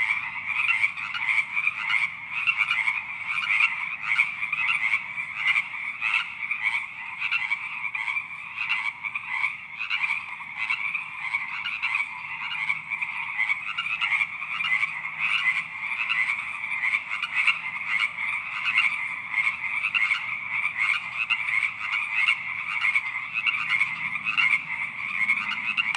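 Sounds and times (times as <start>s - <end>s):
toads and frogs croaking: 0.0s - 25.9s.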